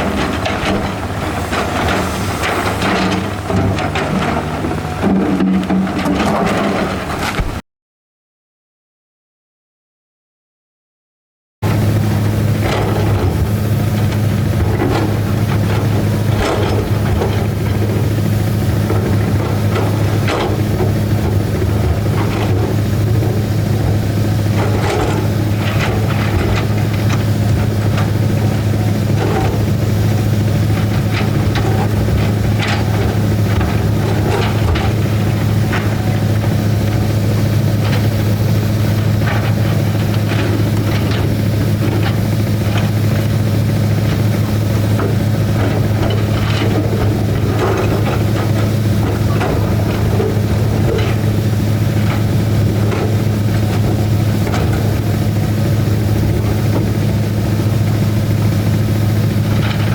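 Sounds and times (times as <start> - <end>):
excavator diesel engine running: 0.0 - 7.6, 11.6 - 59.9
machine knocks and clatter: 0.0 - 7.6, 11.7 - 59.9.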